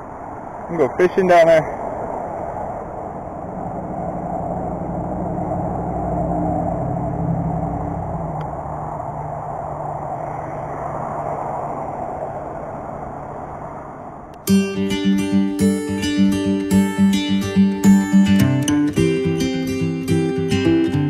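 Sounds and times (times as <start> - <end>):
road and tyre noise: 0.0 - 14.5
vehicle engine drone: 0.0 - 14.6.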